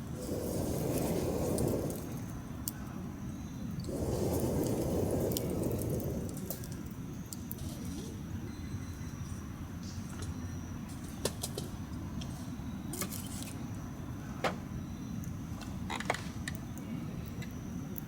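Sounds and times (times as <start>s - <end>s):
fire crackles and pops: 0.0s - 2.9s, 3.6s - 8.2s
campfire rumble: 0.0s - 8.5s, 15.1s - 18.0s.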